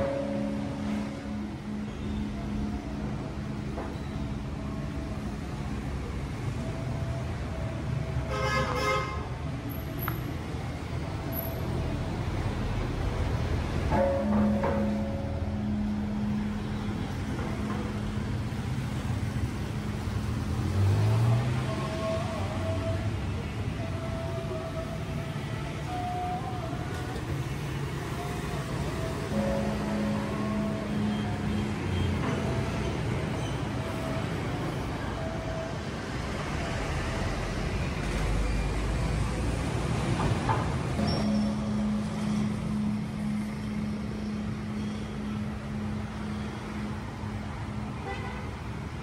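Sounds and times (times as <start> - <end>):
large bell humming: 0.0 - 4.3, 13.8 - 18.0, 29.1 - 34.2, 41.0 - 48.0
road traffic rumble: 0.0 - 49.0.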